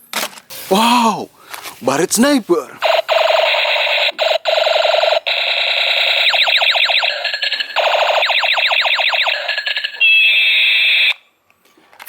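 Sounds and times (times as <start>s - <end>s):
toy gun electronic firing sound: 2.8s - 11.2s.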